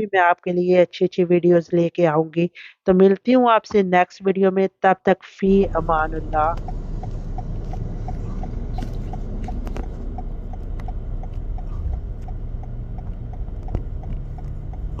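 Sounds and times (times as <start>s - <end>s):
idling car rumble: 5.5s - 15.0s
turn signal clicking: 5.5s - 15.0s.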